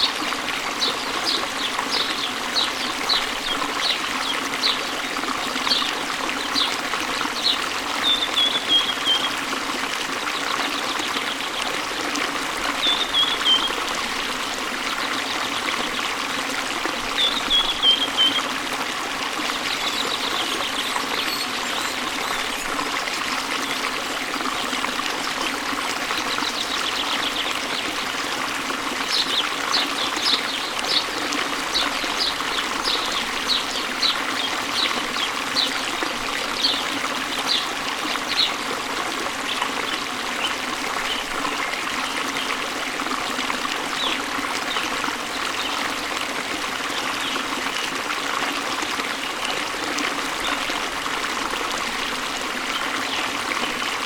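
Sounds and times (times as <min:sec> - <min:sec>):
waterfall rushing water: 0:00.0 - 0:54.0
small birds chirping: 0:07.4 - 0:09.4, 0:12.8 - 0:13.8, 0:29.1 - 0:38.6.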